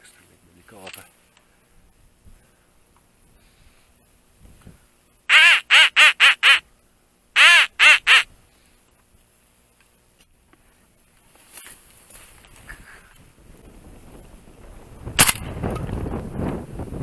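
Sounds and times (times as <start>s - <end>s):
duck quacking: 5.3s - 6.6s, 7.4s - 8.3s.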